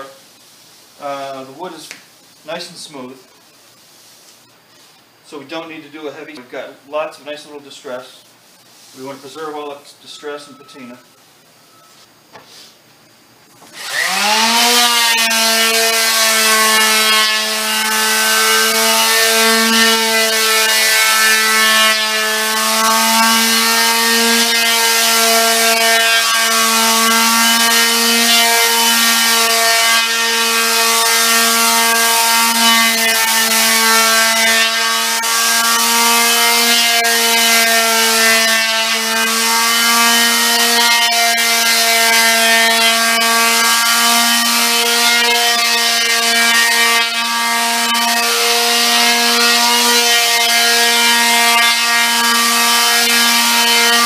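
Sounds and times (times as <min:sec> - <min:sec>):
sandpaper hissing on wood: 0:03.8 - 0:05.0, 0:08.6 - 0:09.4, 0:12.4 - 0:12.8
orbital sander running: 0:13.7 - 0:54.0.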